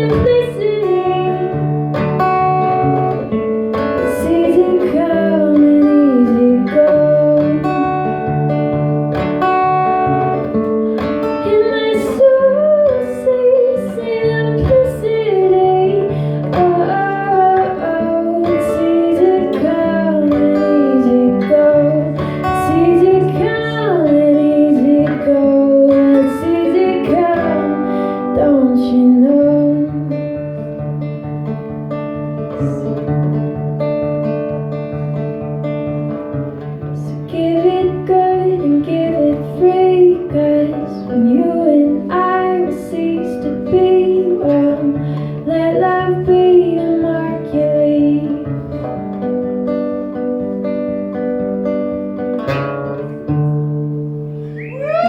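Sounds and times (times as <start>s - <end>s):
acoustic guitar: 0.0s - 55.0s
person singing: 54.6s - 55.0s.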